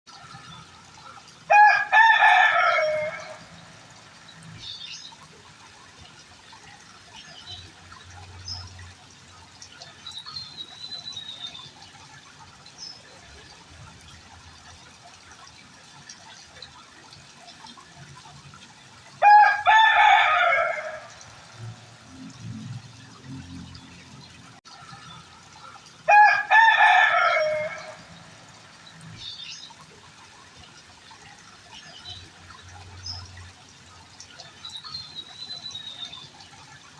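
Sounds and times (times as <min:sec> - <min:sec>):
rooster crowing: 0:01.5 - 0:03.4, 0:19.2 - 0:21.1, 0:26.1 - 0:28.0.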